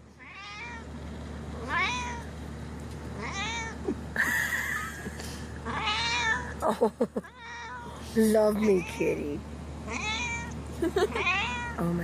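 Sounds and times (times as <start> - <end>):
cat meowing: 0.2 - 0.9, 1.6 - 2.3, 3.2 - 3.8, 5.6 - 6.5, 9.9 - 11.9.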